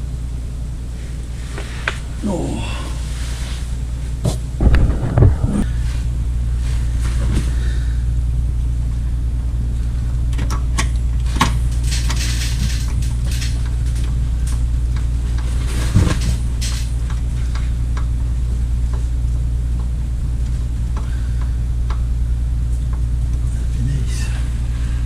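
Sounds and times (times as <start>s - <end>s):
steady low hum: 0.0s - 25.0s
loud metal clunk: 4.3s - 5.7s.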